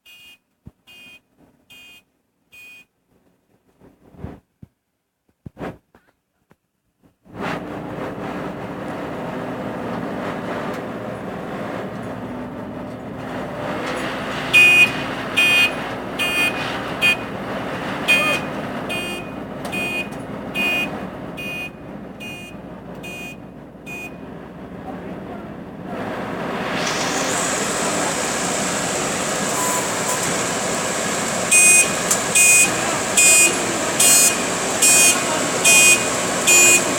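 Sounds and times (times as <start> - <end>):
reversing alarm beeping: 0.0 - 2.0, 14.5 - 17.3, 18.0 - 24.2, 29.5 - 30.3, 31.5 - 36.9
vehicle engine running: 7.3 - 36.9.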